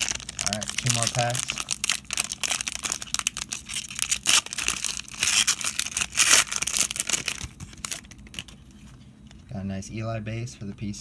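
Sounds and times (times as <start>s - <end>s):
plastic wrapper tearing and crinkling: 0.0s - 8.7s.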